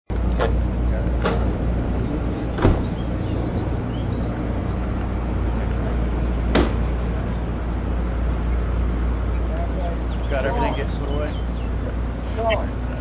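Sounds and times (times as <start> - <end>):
machinery drone: 0.1 - 13.0
sharp knocks: 6.5 - 6.9.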